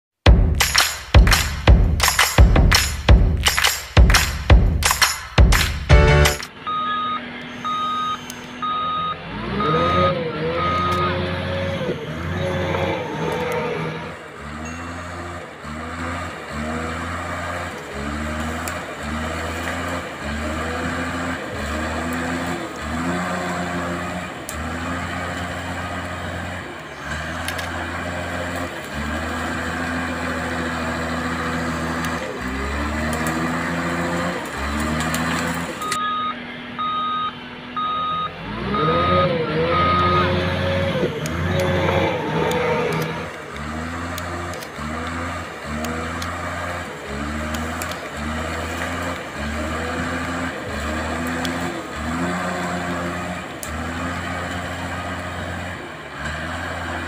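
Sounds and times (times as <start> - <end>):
electronic reversing beeps: 6.0 - 13.9, 35.8 - 43.0
toy bulldozer motors whining: 6.7 - 57.0.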